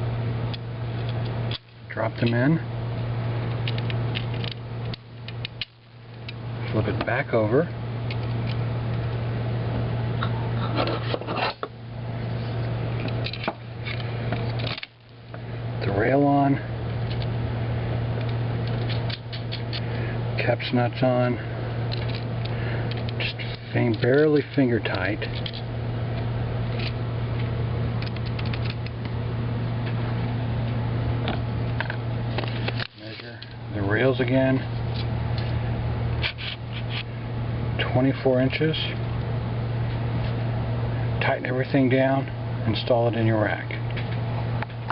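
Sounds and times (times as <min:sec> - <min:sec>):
electrical hum: 0:00.0 - 0:44.9
metal parts clicking and clattering: 0:03.5 - 0:05.7, 0:21.9 - 0:25.7, 0:26.7 - 0:28.9.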